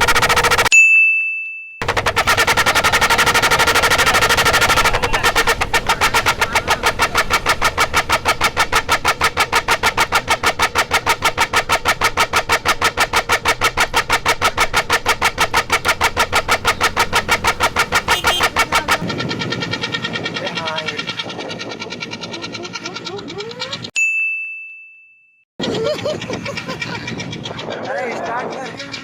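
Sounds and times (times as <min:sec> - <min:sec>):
electric horns pulsing stutter: 0:00.0 - 0:00.7, 0:01.8 - 0:19.0.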